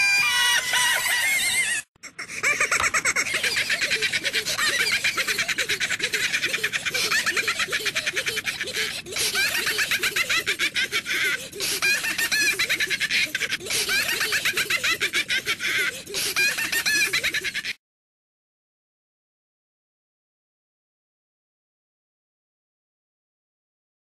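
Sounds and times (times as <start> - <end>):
sped-up cartoon voices giggling: 0.1 - 17.8.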